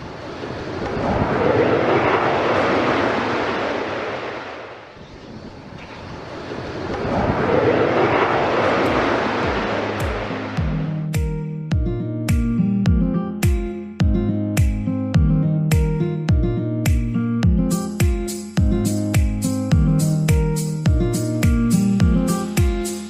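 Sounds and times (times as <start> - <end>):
airplane noise: 0.0 - 11.4.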